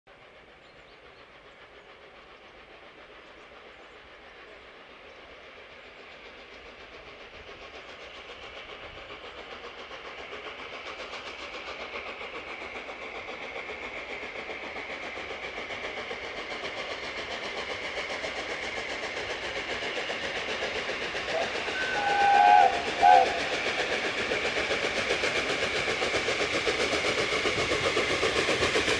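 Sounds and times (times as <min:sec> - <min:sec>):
steam locomotive exhaust beats: 0:00.1 - 0:28.9
steam whistle blasts: 0:21.3 - 0:23.5.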